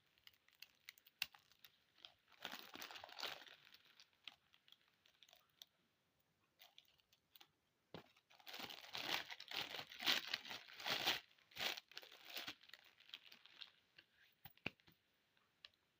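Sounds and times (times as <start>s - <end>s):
candy wrapper crinkling: 0.0s - 5.6s, 8.2s - 13.9s.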